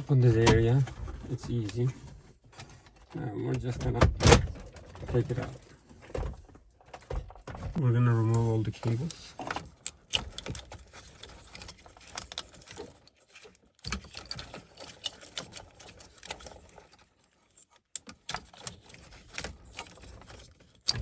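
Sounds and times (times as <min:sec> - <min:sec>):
plastic connectors clicking and rattling: 0:08.2 - 0:21.0.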